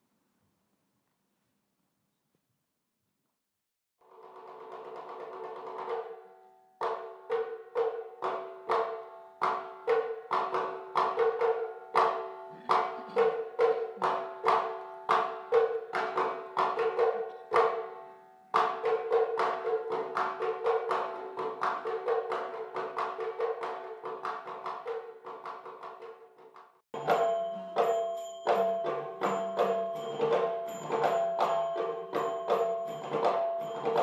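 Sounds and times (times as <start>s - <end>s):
percussive music over held tone: 6.8s - 34.0s.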